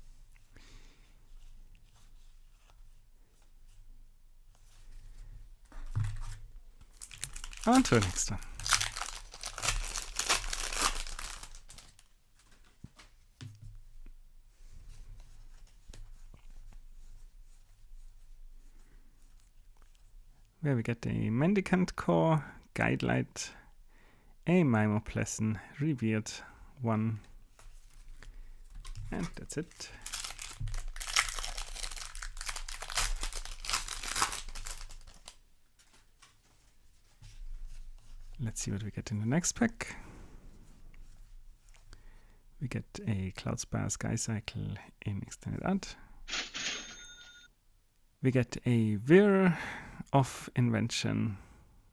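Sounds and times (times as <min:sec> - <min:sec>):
wrapper tearing and crinkling: 0:06.9 - 0:12.1, 0:28.8 - 0:35.4.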